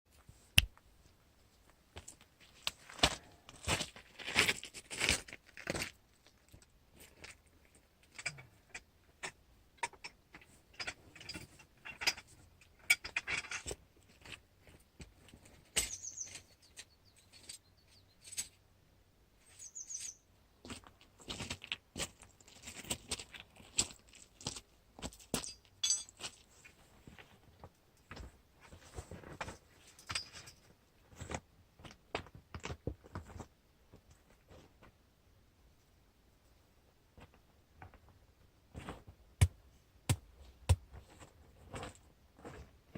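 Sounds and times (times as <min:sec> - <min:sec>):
birds chirping: 0:15.8 - 0:18.4, 0:19.5 - 0:20.3
short high bird calls: 0:15.9 - 0:18.2, 0:19.6 - 0:20.2.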